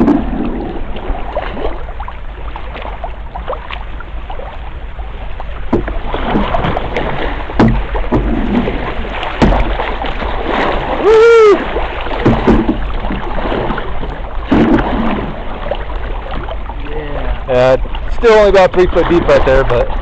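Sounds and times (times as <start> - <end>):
sharp knocks on canoe: 0.0 - 0.6, 5.7 - 10.8, 12.1 - 13.8, 14.4 - 15.4
rushing splashing water: 0.0 - 20.0.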